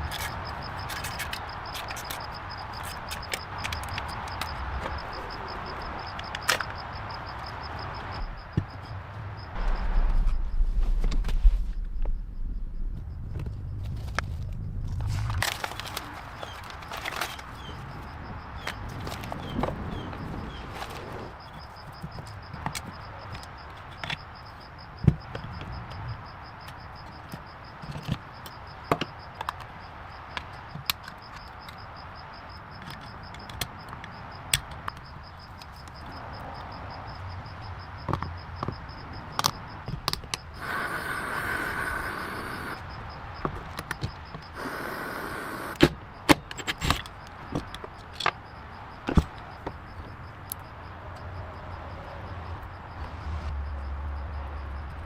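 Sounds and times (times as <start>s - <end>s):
short bursts of hissing: 40.6s - 42.8s, 44.6s - 45.8s.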